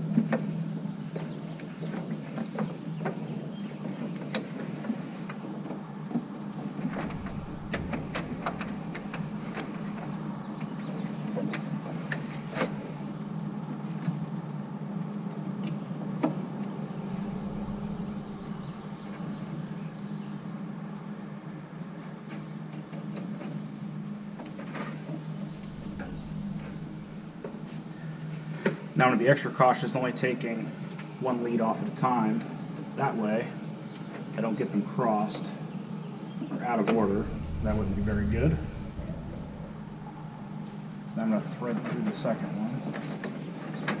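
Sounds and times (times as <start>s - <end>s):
steady low hum: 6.6s - 13.4s, 16.5s - 20.6s, 25.2s - 28.6s, 36.8s - 41.5s.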